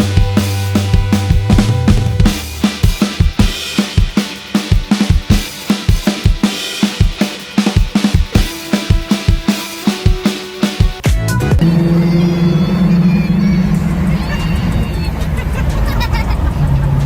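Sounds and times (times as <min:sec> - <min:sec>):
drum kit beat: 0:00.0 - 0:11.7.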